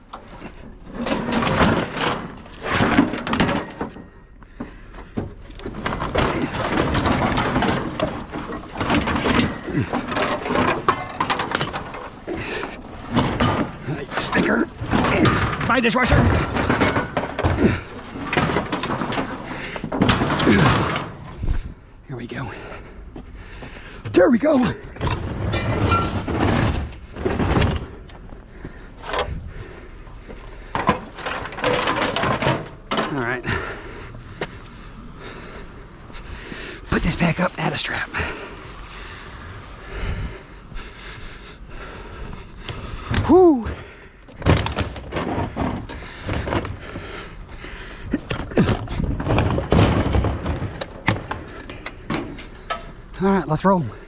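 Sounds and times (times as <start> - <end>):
scrap metal knocks and scrapes: 0.2 - 21.7, 24.8 - 29.8.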